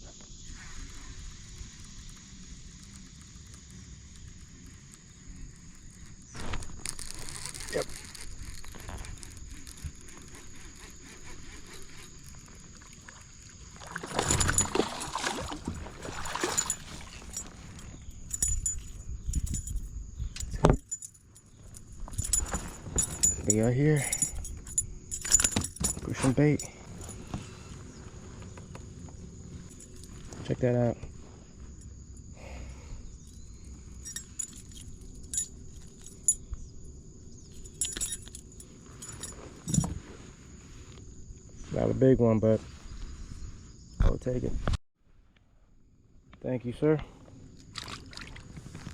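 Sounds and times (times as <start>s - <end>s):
water splashing and sloshing: 12.1s - 18.0s, 47.6s - 48.9s
fishing tackle jingling: 14.0s - 27.3s, 29.6s - 30.5s, 33.0s - 36.6s, 37.3s - 40.0s.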